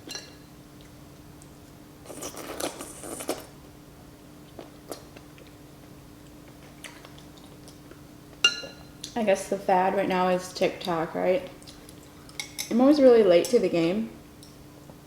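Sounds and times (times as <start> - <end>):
faint steady hum: 0.0 - 15.0
mouth sounds eating noodle soup: 2.0 - 3.6.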